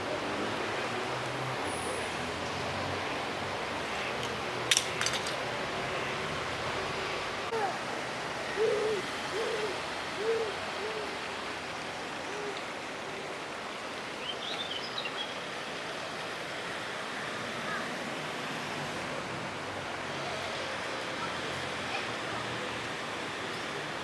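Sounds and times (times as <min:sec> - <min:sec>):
bird hooting: 0:08.5 - 0:11.2.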